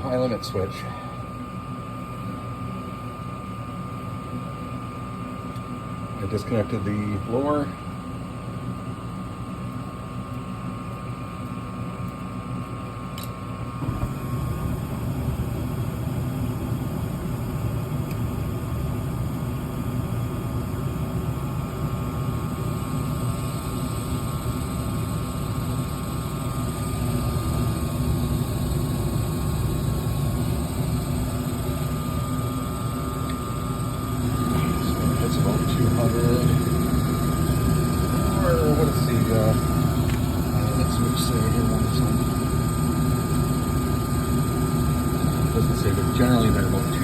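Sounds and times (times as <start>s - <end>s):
furnace motor hum: 0.0s - 47.0s
gas burners rushing: 26.7s - 42.5s.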